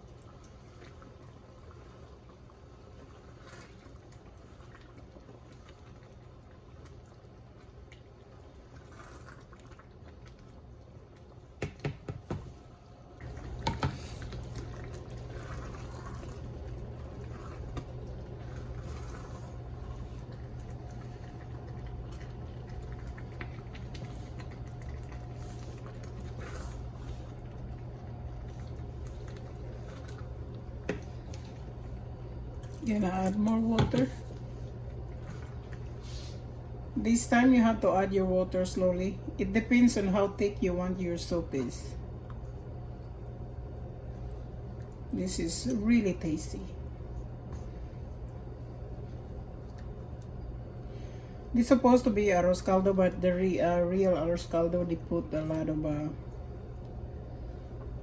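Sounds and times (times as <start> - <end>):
porridge simmering and bubbling: 0.0 - 58.0
steady low hum: 0.0 - 58.0.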